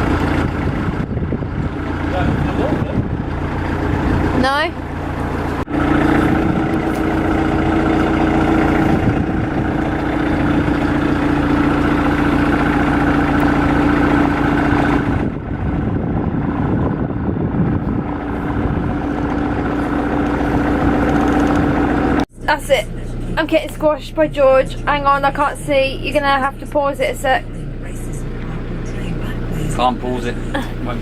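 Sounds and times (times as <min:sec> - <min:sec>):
engine running steadily: 0:00.0 - 0:31.0.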